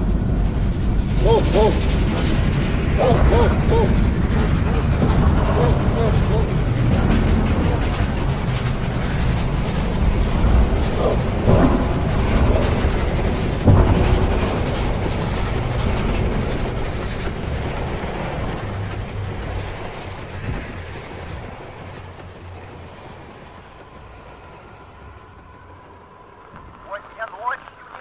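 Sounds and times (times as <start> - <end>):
train rumbling and clattering: 0.0 - 28.0
sharp knocks: 1.2 - 22.2.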